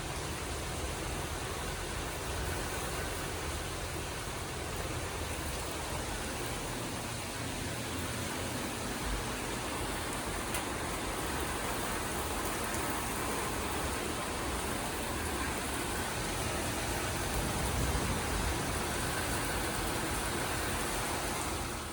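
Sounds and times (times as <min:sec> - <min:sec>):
heavy rain hissing: 0:00.0 - 0:21.9
wind gusts rumbling: 0:16.4 - 0:21.0.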